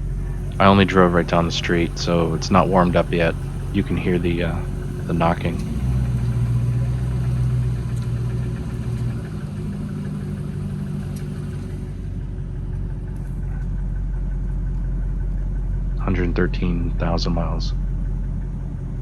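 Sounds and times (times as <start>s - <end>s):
car engine idling: 0.0s - 19.0s
engine knocking: 0.0s - 19.0s.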